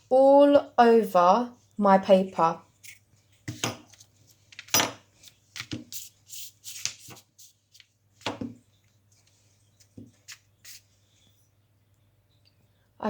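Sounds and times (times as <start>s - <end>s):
glue stick rubbing on paper: 9.8s - 10.9s.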